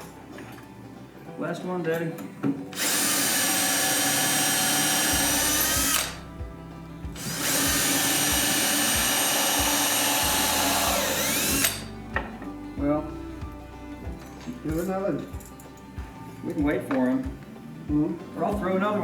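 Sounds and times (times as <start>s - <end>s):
power drill boring into wood: 2.8s - 6.3s, 7.2s - 11.9s.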